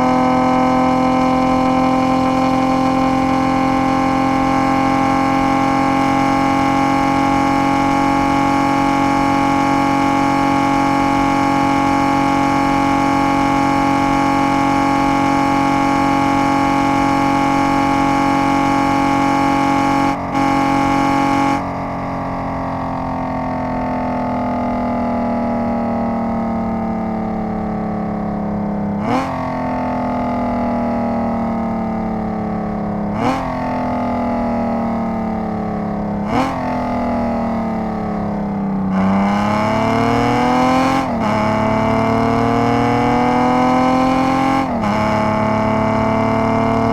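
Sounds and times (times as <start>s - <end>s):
engine revving high: 0.0s - 22.0s, 29.0s - 30.9s, 33.1s - 34.4s, 36.2s - 38.1s, 38.9s - 46.9s.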